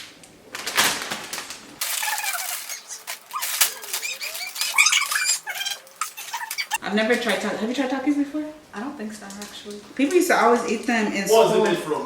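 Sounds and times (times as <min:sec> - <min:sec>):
plastic crinkling: 0:00.0 - 0:06.8
chip bag tearing open: 0:00.5 - 0:06.8
high squeaky sounds: 0:01.8 - 0:06.8.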